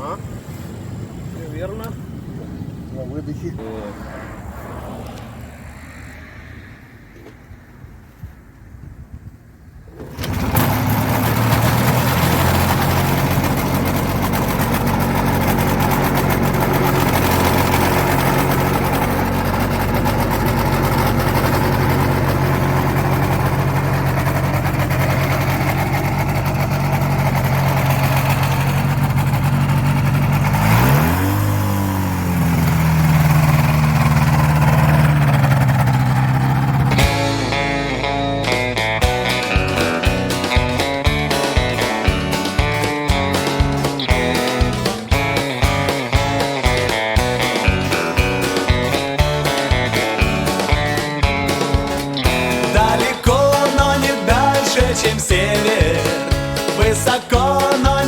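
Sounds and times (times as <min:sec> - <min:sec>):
hang glider engine and propeller: 0:08.0 - 0:37.6, 0:39.3 - 0:54.9.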